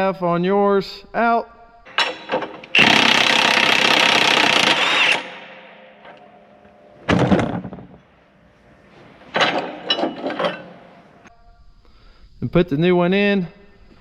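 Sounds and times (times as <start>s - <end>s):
impact wrench running: 1.9s - 6.2s.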